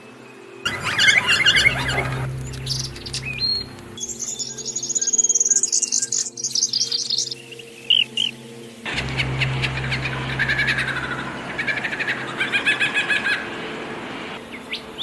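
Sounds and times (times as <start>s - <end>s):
songbirds chirping: 0.0s - 15.0s
steady low hum: 0.7s - 4.4s, 8.9s - 14.4s.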